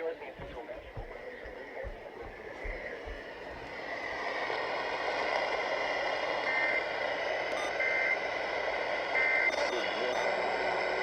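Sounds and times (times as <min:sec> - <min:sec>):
radio static hiss: 0:09.1 - 0:11.0.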